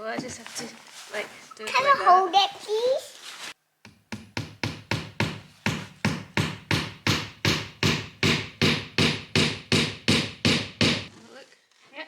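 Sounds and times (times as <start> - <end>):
hammer driving nail into wood: 3.9 - 11.1.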